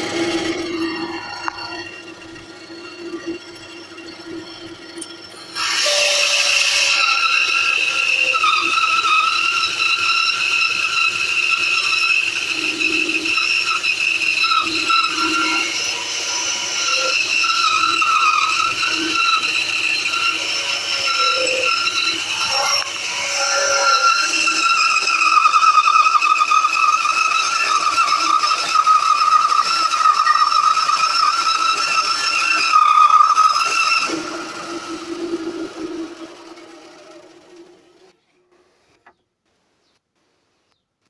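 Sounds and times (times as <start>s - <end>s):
bandsaw blade cutting wood: 0.0s - 1.6s, 5.3s - 38.0s
bandsaw motor running: 0.0s - 38.2s.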